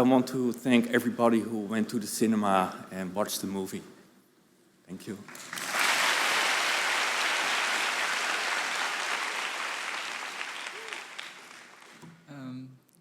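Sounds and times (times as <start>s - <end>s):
audience applauding: 5.2s - 12.0s.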